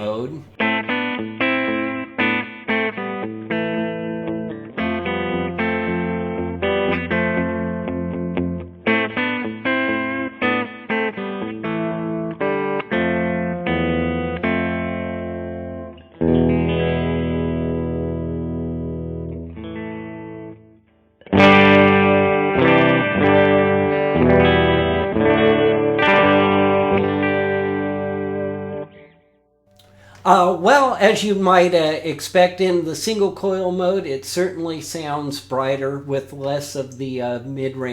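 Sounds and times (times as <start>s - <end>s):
electric guitar picked notes: 0.0s - 29.2s
electric guitar strummed chords: 0.0s - 29.2s.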